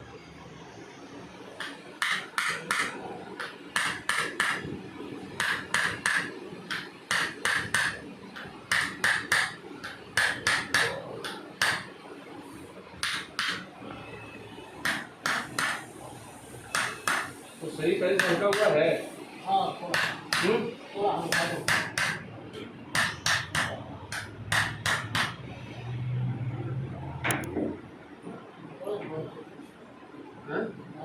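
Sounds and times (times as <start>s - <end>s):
sharp percussive taps: 1.6s - 4.7s, 5.4s - 11.9s, 13.0s - 13.7s, 14.8s - 15.9s, 16.7s - 17.4s, 18.1s - 18.8s, 19.9s - 20.6s, 21.3s - 22.3s, 22.9s - 25.4s.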